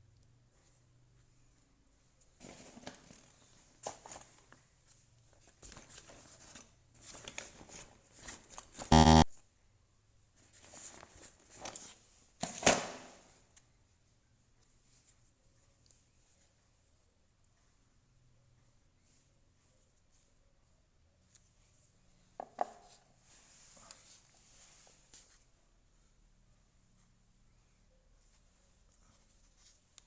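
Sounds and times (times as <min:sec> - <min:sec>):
loud pitched blip: 0:08.9 - 0:09.3.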